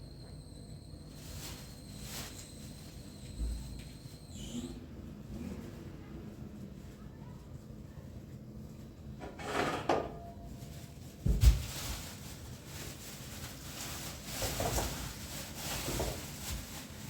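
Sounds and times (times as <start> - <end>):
scraping and rubbing handling noises: 9.2 - 17.0.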